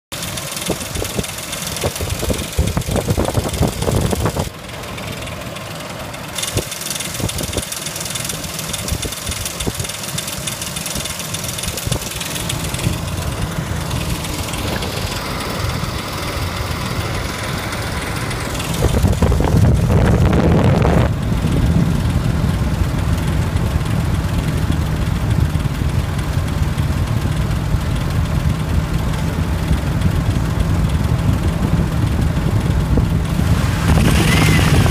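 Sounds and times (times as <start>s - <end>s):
fast ticking rattle: 0.1s - 20.3s, 21.1s - 34.9s
car engine running: 0.1s - 34.9s.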